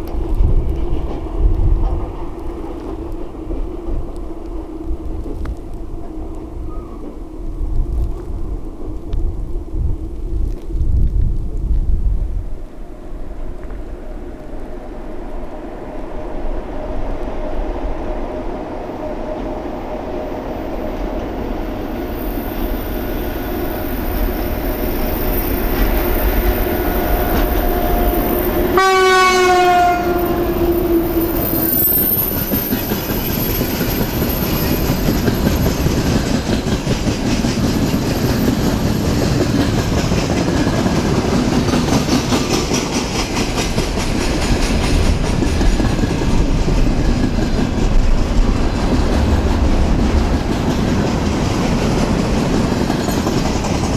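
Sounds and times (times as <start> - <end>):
train wheels clattering on rails: 0.0 - 9.2, 15.8 - 53.9
train horn blast: 14.9 - 32.7.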